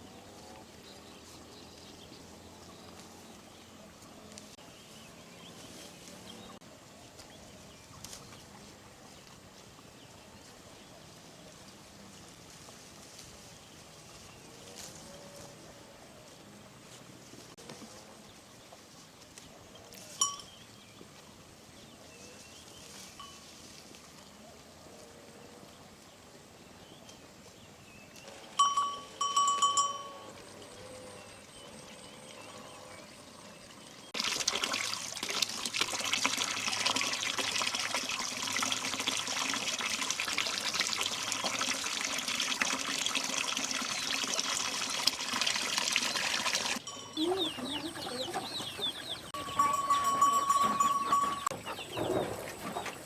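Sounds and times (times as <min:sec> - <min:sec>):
water running: 0:33.2 - 0:47.9.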